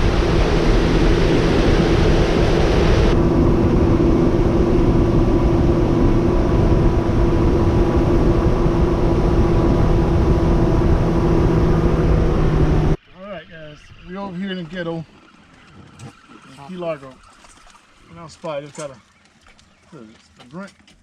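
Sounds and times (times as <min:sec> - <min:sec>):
outboard motor droning: 0:00.0 - 0:13.0
rushing wind: 0:00.0 - 0:13.1.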